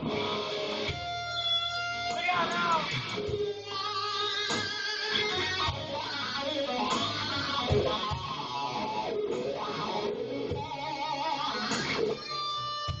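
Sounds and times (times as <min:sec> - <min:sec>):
band playing: 0:00.0 - 0:13.0
electric guitar lead: 0:00.0 - 0:13.0.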